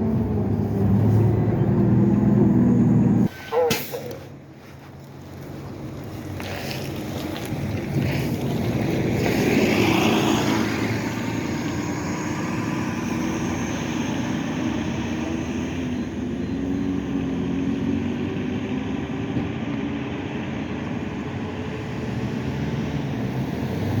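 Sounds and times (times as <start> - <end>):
bus diesel engine running: 0.0 - 9.2.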